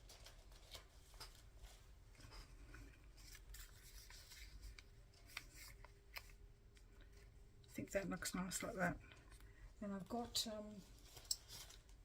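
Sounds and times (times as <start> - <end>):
paper rustling: 0.0 - 7.2, 10.7 - 12.0.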